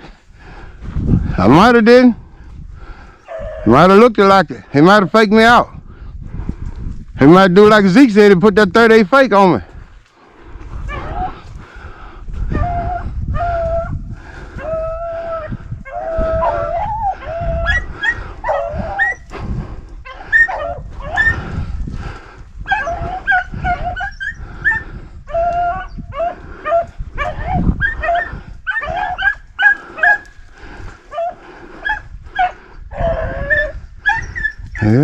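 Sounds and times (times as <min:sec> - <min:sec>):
beagles baying and yipping: 0:14.6 - 0:19.4, 0:20.0 - 0:21.5, 0:22.6 - 0:30.4, 0:31.1 - 0:35.0.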